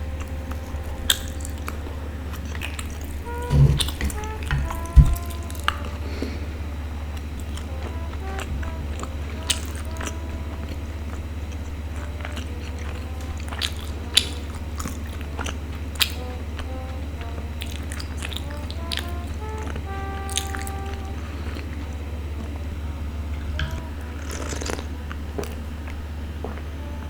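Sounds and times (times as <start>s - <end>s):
wet biting and chewing: 0.0s - 22.6s, 23.3s - 26.7s
light melodic background music: 0.0s - 27.0s
sharp smacking clicks: 0.2s - 6.0s, 12.0s - 21.1s.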